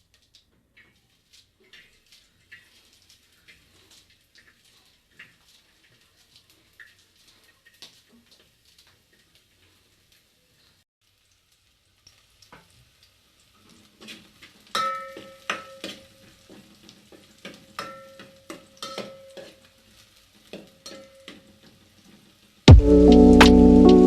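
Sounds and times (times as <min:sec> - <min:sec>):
metal pot ringing: 0:14.8 - 0:15.8.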